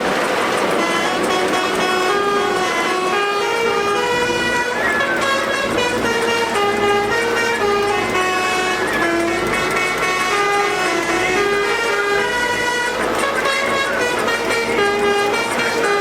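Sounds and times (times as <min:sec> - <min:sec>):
bus horn playing a tune: 0:00.1 - 0:16.0.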